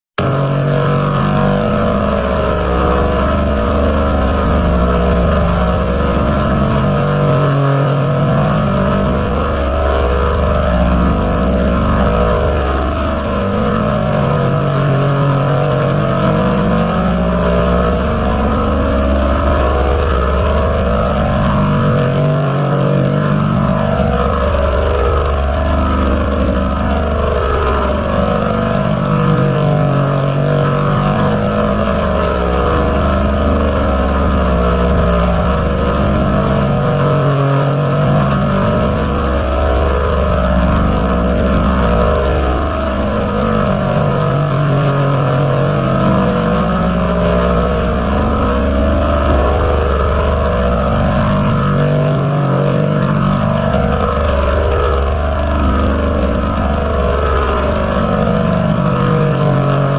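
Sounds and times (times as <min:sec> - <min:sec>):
distorted droning with pitch sweeps: 0:00.2 - 0:59.9.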